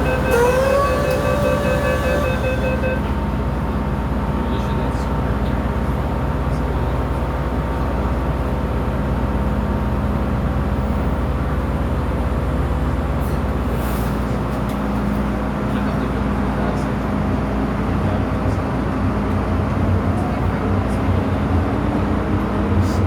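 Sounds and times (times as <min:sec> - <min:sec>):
motor hum: 0:00.0 - 0:03.2
train rumbling in motion: 0:00.0 - 0:23.0.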